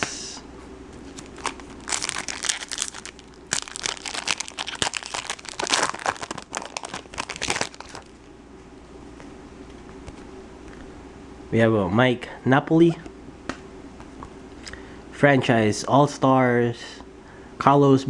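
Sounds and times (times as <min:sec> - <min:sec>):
foil wrapper crinkling and tearing: 0:01.0 - 0:08.3.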